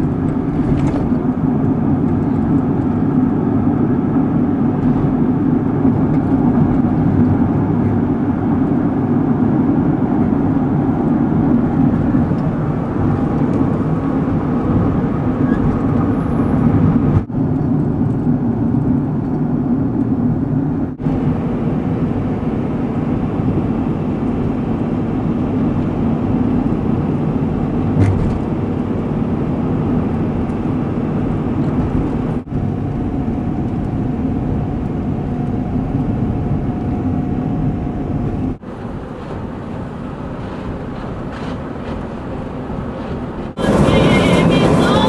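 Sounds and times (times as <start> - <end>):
van engine and road noise: 0.0 - 45.0.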